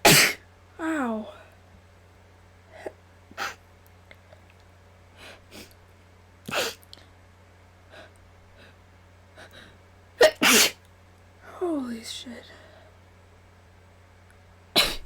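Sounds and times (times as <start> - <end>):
person breathing and sniffing: 5.2 - 5.7.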